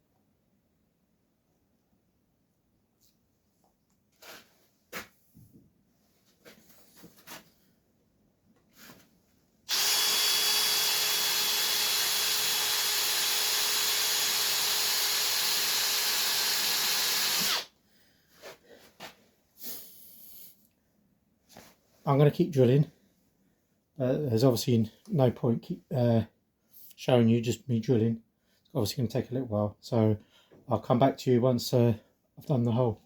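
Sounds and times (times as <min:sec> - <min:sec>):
electric drill drilling into bolt: 0:09.7 - 0:17.7.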